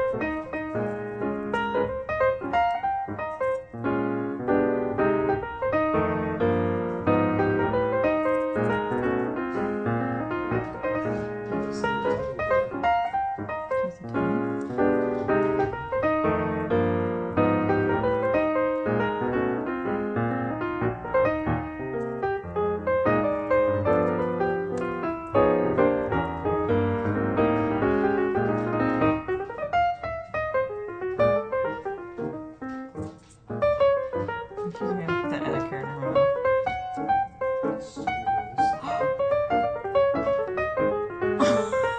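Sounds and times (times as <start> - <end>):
piano music: 0.0 - 41.9.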